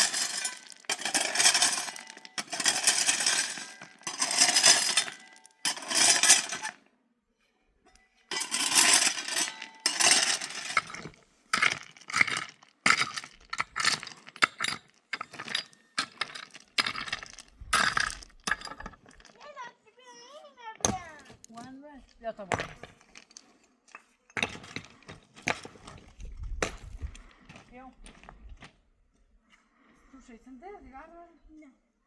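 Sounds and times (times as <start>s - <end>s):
hard objects scraping and clinking: 0.0s - 6.8s, 7.9s - 19.6s, 20.8s - 27.3s.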